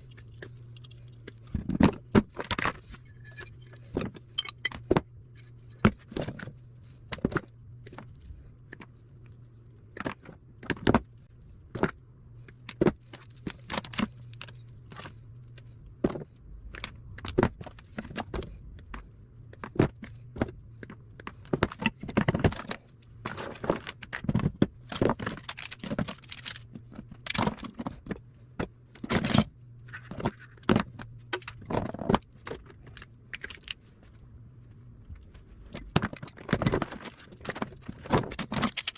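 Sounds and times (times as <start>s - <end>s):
metal and plastic parts clinking: 0.0s - 8.2s, 21.4s - 28.2s, 29.0s - 33.8s, 35.6s - 38.9s
steady low hum: 0.0s - 38.9s.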